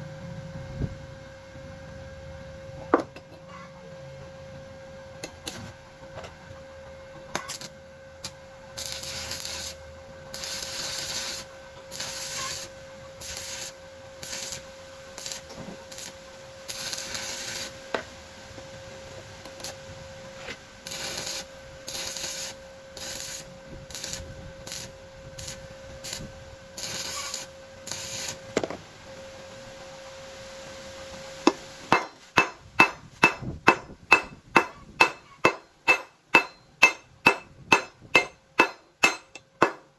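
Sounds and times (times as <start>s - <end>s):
faint steady hum: 0.0s - 39.9s
hammer striking metal: 31.9s - 39.9s.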